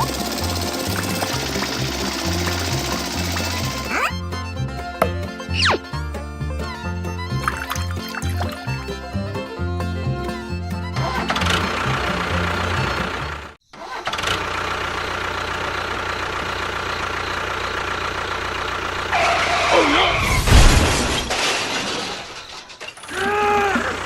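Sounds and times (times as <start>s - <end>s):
sliding tones: 0.0s - 4.2s
engine-like running noise: 0.0s - 5.5s, 6.2s - 20.2s.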